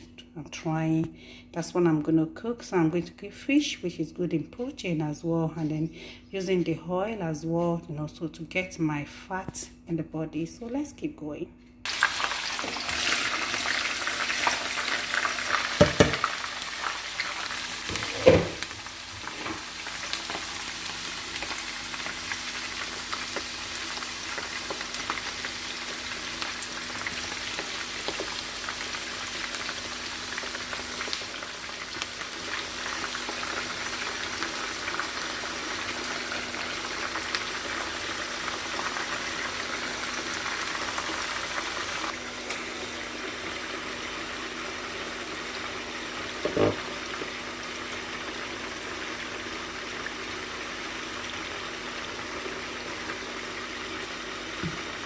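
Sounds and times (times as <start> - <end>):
food sizzling in hot oil: 11.9 - 55.0
knocks: 15.8 - 16.2.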